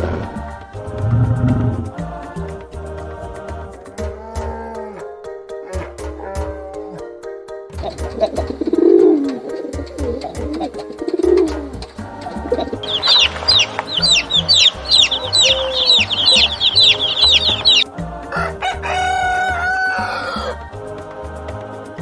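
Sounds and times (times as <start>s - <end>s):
low music beat: 0.0s - 4.6s, 7.8s - 19.9s
chicks peeping: 10.2s - 17.9s
rooster crowing: 12.4s - 20.7s.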